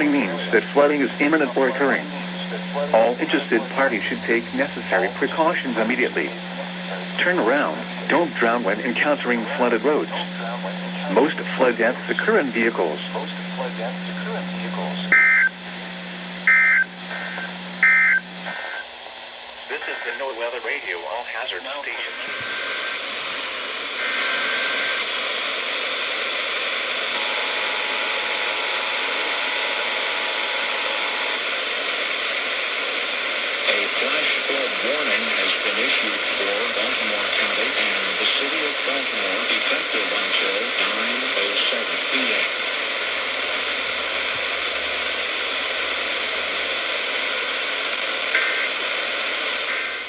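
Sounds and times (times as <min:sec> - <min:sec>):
radio static hiss: 0:00.0 - 0:50.0
faint two-tone signal: 0:27.1 - 0:31.4.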